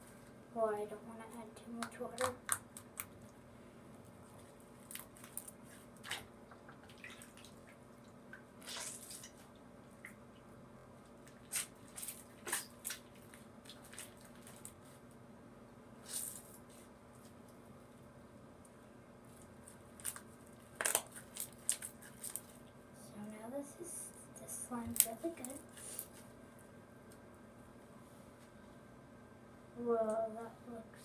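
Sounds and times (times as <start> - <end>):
slime squelching: 4.1 - 10.3, 11.1 - 15.1, 19.3 - 22.8.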